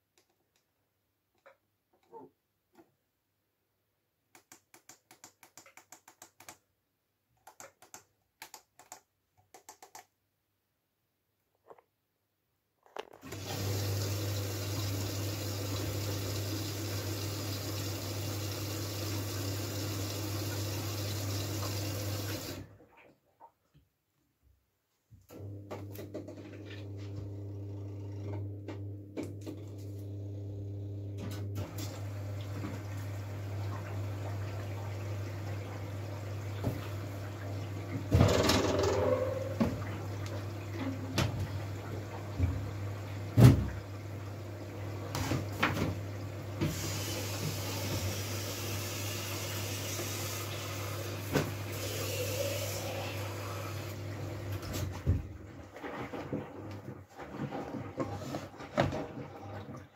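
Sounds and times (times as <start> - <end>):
water rushing into machine: 13.3 - 22.7, 44.8 - 54.7.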